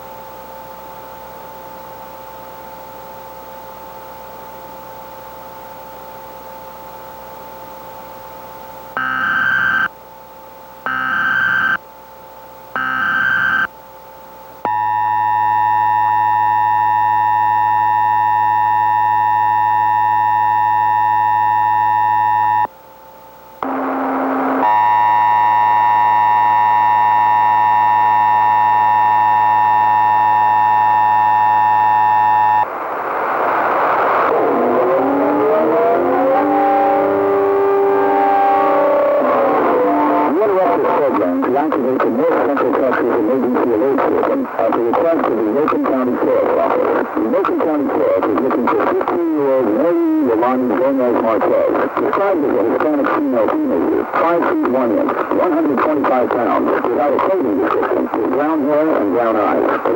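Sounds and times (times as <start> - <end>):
data bursts: 9.0 - 9.9, 10.9 - 11.8, 12.8 - 13.7, 14.7 - 22.7, 23.6 - 32.7
short buzz: 23.6 - 32.7.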